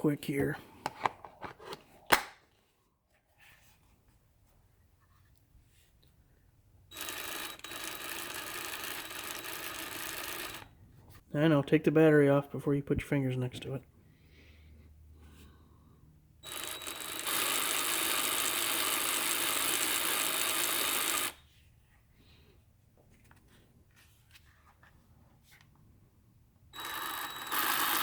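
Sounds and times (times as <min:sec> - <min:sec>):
mini chainsaw whirring: 0:06.9 - 0:10.7, 0:16.4 - 0:21.4, 0:26.8 - 0:28.0.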